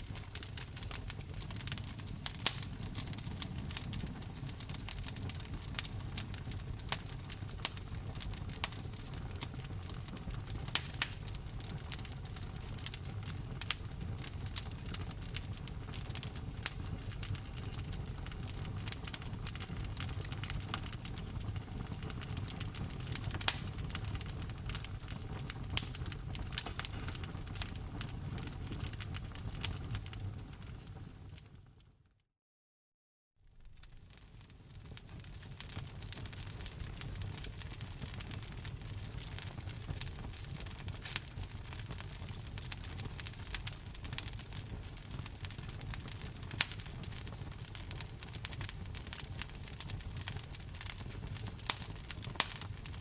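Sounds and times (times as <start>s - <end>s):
low rumble of burning logs: 0.0s - 31.9s, 33.5s - 53.0s
wood fire crackling and popping: 0.0s - 31.9s, 33.6s - 53.0s.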